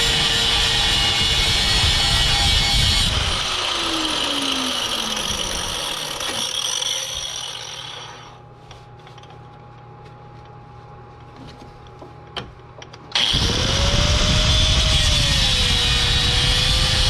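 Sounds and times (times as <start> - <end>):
power cutting tool winding down: 0.0 - 8.3, 13.2 - 17.0.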